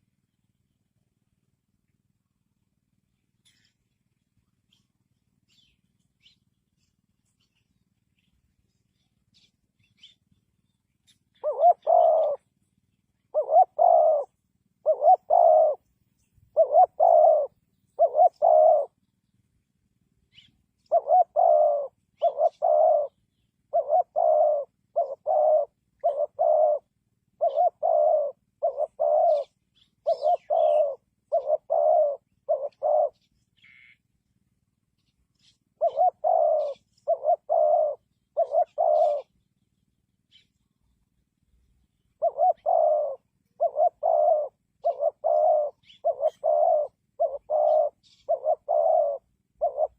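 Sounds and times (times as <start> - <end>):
dove cooing: 11.1 - 12.6, 13.2 - 19.0, 20.3 - 34.0, 35.0 - 39.4, 42.2 - 49.9.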